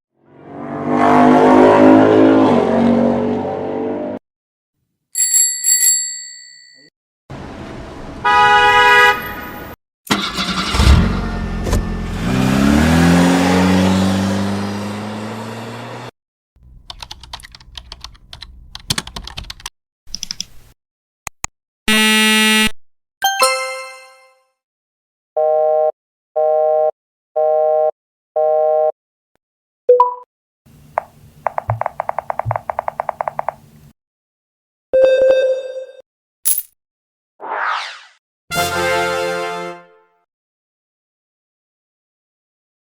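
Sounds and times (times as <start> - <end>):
car engine revving: 10.2 - 16.8
loud buzzer: 21.9 - 22.8.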